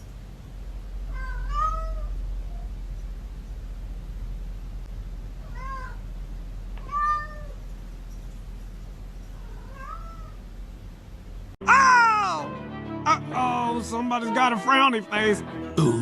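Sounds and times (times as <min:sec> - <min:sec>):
cat meowing: 0:01.1 - 0:02.7, 0:05.4 - 0:06.0, 0:06.8 - 0:07.6, 0:09.4 - 0:10.4.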